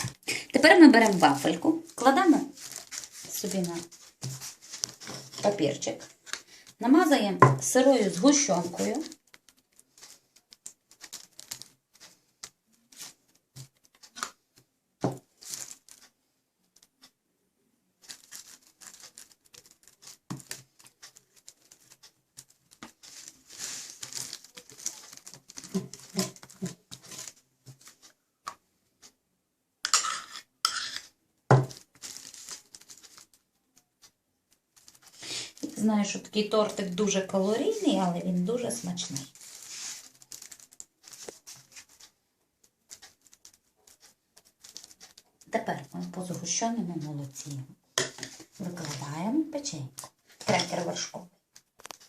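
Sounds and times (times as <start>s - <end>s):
scraping on crisp wafer: 0.0s - 14.4s, 15.4s - 16.1s, 18.0s - 28.1s, 29.9s - 33.4s, 34.7s - 35.8s, 36.7s - 42.1s, 42.9s - 46.2s.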